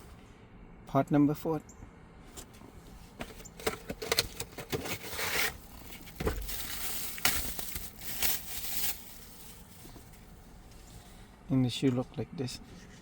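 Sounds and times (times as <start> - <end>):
plastic packaging crinkling: 3.6 - 10.3.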